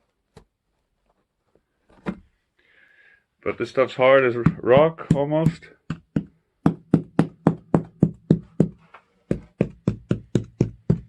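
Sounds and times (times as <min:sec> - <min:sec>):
rapid knocking on hard coating: 0:04.3 - 0:11.0.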